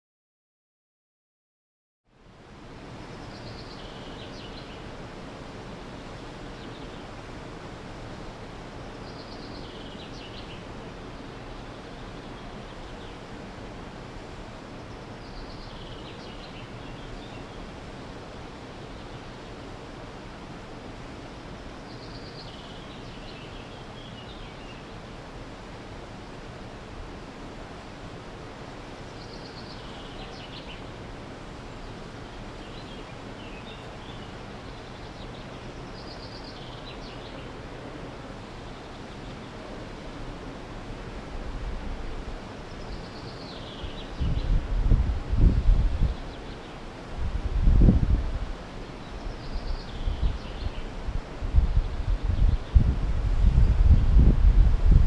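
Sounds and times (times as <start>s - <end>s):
outdoor hiss: 2.1s - 55.0s
songbird singing: 3.0s - 5.0s, 5.8s - 7.2s, 8.7s - 13.5s, 14.7s - 17.8s, 21.7s - 25.1s, 28.9s - 40.3s, 42.5s - 46.9s, 48.7s - 54.7s.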